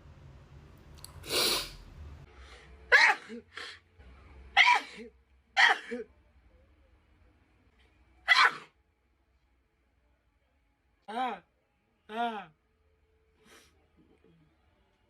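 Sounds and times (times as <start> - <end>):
woman sneezing: 2.9 - 3.4, 4.6 - 6.0, 8.3 - 8.7.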